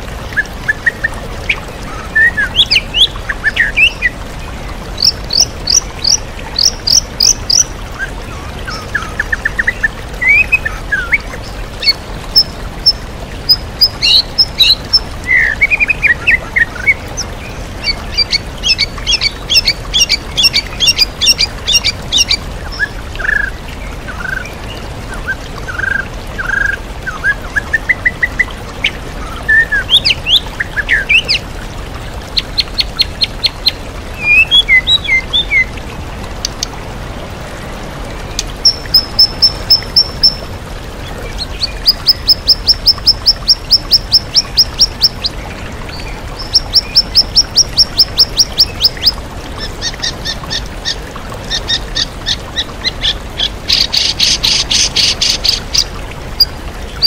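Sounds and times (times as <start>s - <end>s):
waterfall rushing: 0.0s - 57.0s
songbird singing varied song: 38.4s - 40.5s.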